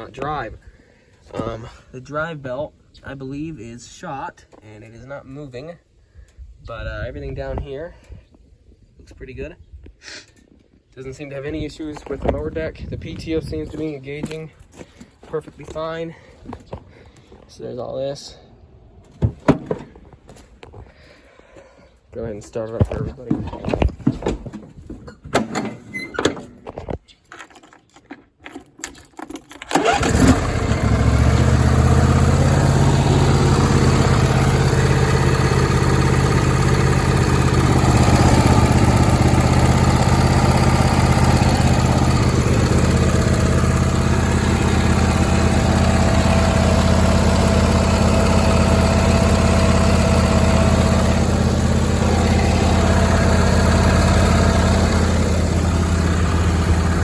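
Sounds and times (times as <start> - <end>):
lawn tractor engine starting and idling: 29.6 - 57.0.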